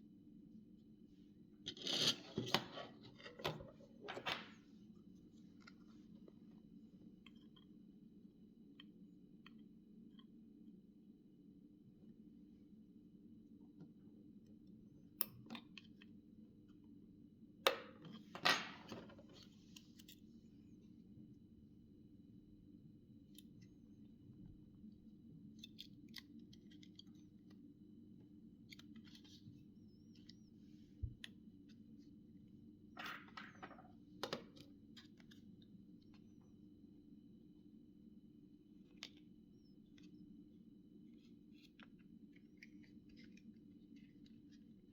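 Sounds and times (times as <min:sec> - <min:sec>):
low steady hum: 0:19.2 - 0:44.9.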